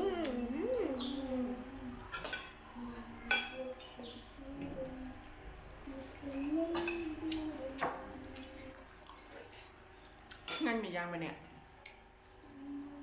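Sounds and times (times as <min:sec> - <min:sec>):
cutlery clinking against dishes: 0:02.1 - 0:02.6, 0:10.4 - 0:10.7.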